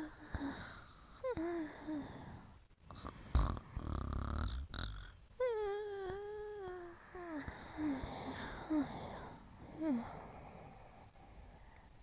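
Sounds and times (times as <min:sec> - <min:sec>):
pet snoring: 0:02.9 - 0:05.2.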